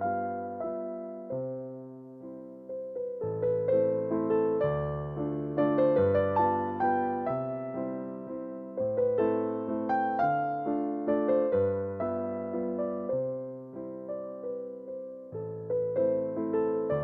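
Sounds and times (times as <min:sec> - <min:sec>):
gentle electric piano melody: 0:00.0 - 0:17.0.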